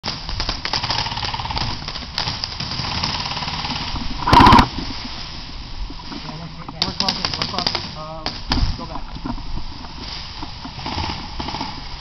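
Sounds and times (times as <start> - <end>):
airsoft guns firing full auto: 0.0 - 4.7, 6.8 - 8.4.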